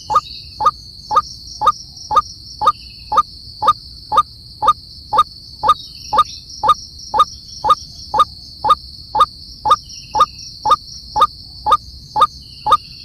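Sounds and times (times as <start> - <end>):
repeated animal call: 0.0 - 13.0.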